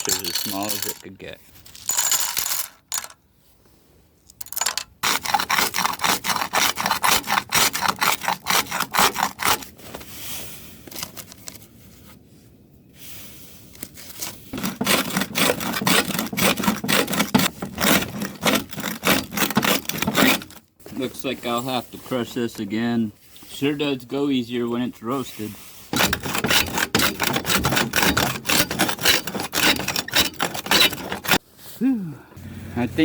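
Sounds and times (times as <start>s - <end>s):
rock crusher grinding ore: 0.0s - 1.1s, 4.4s - 9.6s, 14.5s - 21.6s, 26.0s - 31.4s.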